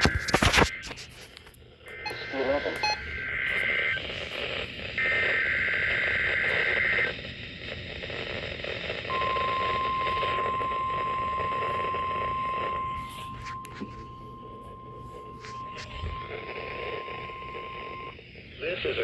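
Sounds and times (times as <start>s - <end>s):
radio static: 0.0s - 19.0s
steady alarm tone: 9.1s - 18.2s
warbling digital tones: 11.2s - 18.1s.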